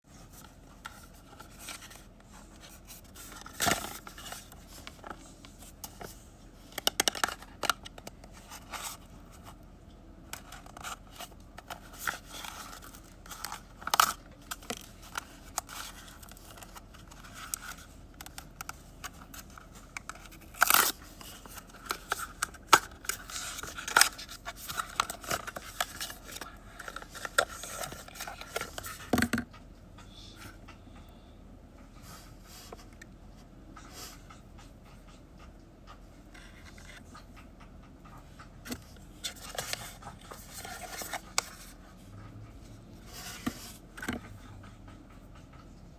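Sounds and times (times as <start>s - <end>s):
cardboard and plastic rustling: 0.1s - 9.6s, 10.2s - 29.5s, 38.6s - 42.0s.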